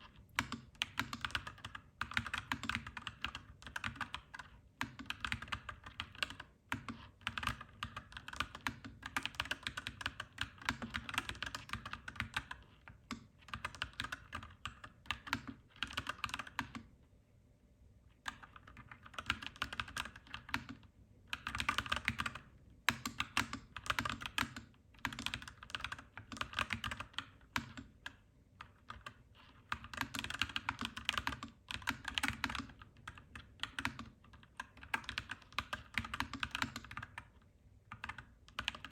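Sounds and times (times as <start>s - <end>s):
mechanical keyboard typing: 0.0s - 16.9s, 18.2s - 38.9s.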